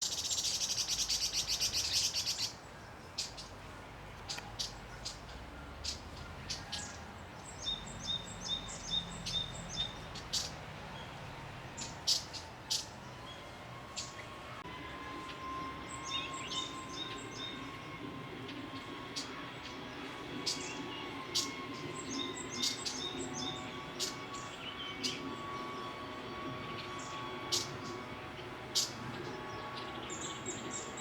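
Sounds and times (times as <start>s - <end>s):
bird buzzing rattle: 20.4s - 31.0s.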